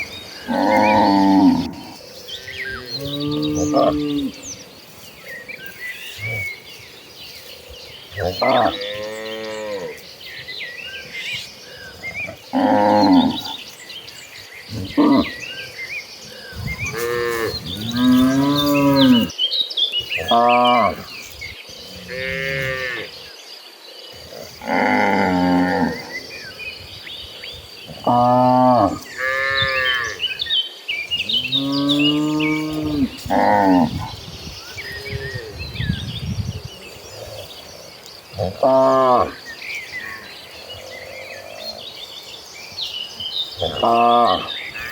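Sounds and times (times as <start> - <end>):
cattle mooing: 0.5 - 4.4, 16.6 - 19.3, 31.3 - 34.0.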